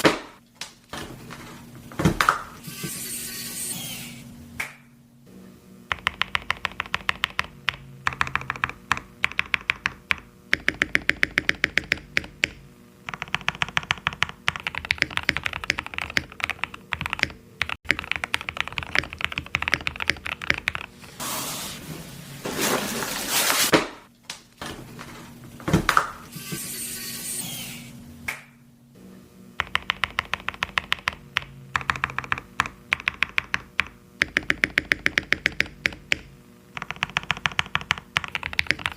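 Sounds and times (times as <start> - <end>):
mechanical keyboard typing: 5.9 - 21.0, 29.6 - 38.9.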